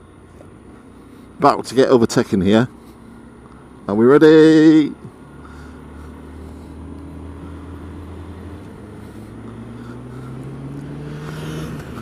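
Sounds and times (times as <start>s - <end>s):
road and wind noise: 0.0s - 12.0s
motorcycle engine accelerating: 5.0s - 12.0s.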